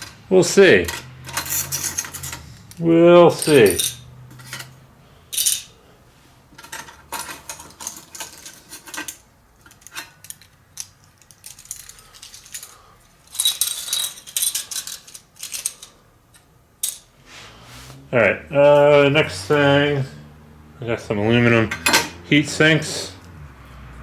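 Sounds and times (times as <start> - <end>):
laptop parts clattering: 3.4 - 5.8, 6.5 - 17.1.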